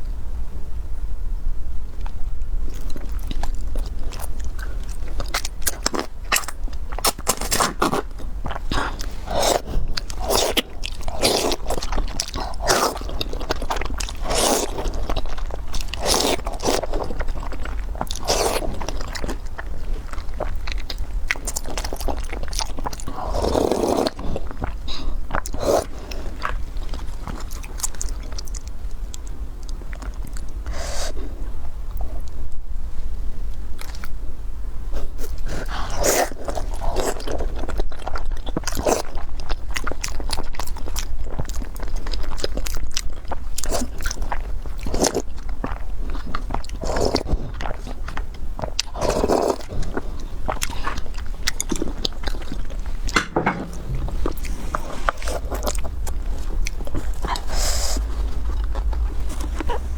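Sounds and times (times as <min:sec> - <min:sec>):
chewing and crunching food: 0:01.9 - 0:32.5, 0:33.3 - 0:59.9
moist mouth sounds: 0:48.8 - 0:59.9.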